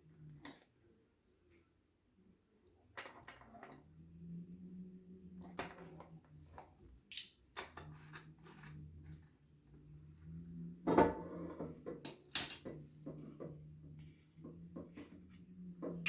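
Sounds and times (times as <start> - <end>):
utensils clinking against bowl: 12.0 - 12.8.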